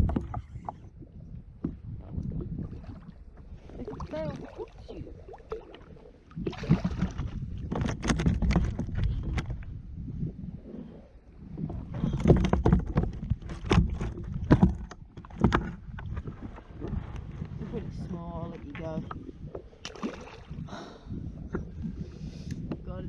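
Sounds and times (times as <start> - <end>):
knocking and clicking against kayak: 0.0 - 2.6, 5.5 - 9.8, 11.5 - 17.6, 21.4 - 22.9.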